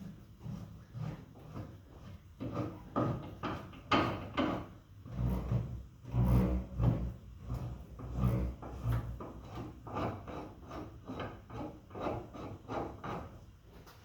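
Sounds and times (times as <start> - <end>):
metal scraping and knocking: 2.4 - 13.3.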